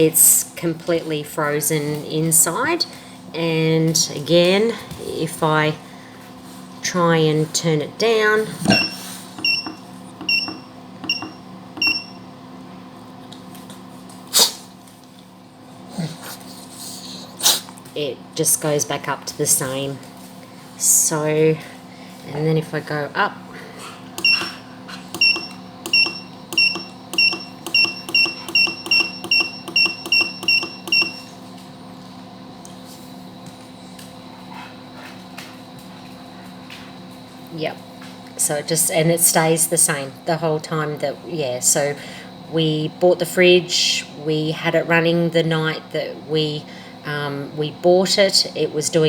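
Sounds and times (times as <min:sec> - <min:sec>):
fridge compressor humming: 0:00.0 - 0:49.0
fridge humming: 0:07.0 - 0:12.8, 0:22.4 - 0:32.7
control panel button clicks: 0:24.2 - 0:24.6, 0:25.2 - 0:31.2
short high beeps: 0:25.2 - 0:31.3.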